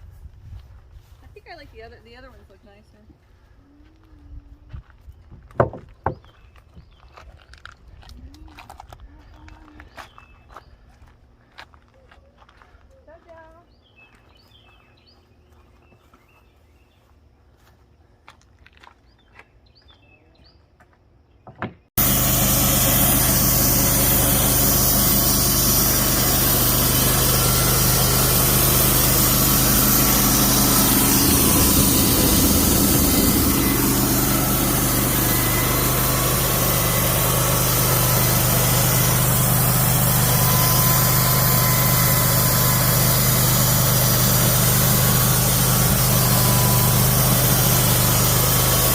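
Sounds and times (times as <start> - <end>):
sawmill engine running: 22.0 - 48.9.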